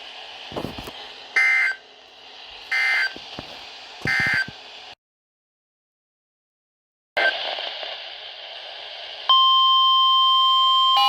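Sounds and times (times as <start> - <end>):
radio hiss: 0.0 - 4.9, 7.2 - 9.3.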